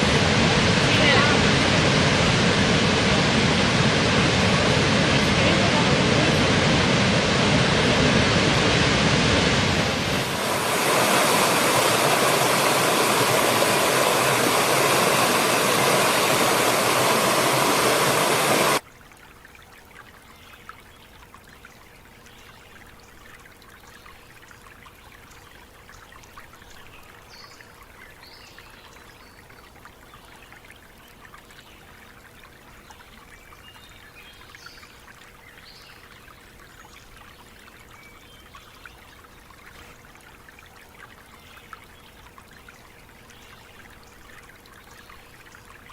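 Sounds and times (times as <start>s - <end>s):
trickling stream: 0.0s - 1.6s, 9.7s - 45.9s
loud rushing water: 0.0s - 18.8s.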